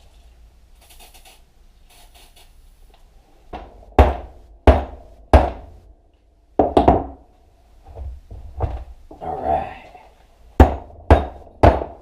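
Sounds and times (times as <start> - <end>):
hammer striking metal: 10.6 - 12.0.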